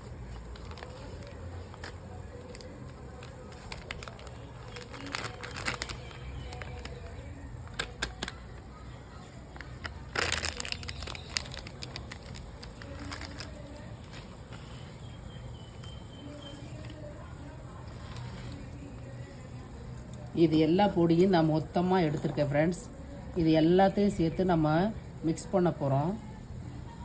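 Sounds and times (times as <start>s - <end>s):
plastic packets crinkling: 0.0s - 17.0s.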